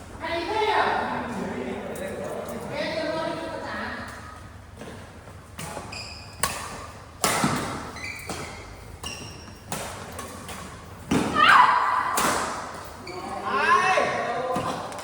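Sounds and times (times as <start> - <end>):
shoes squeaking on court floor: 4.4 - 11.2, 12.7 - 15.0
rackets hitting shuttlecock: 5.6 - 11.4, 12.0 - 12.9.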